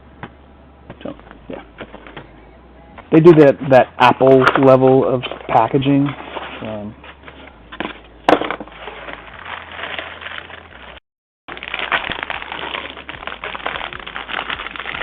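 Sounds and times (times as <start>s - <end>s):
cardboard and plastic rustling: 4.1s - 15.0s.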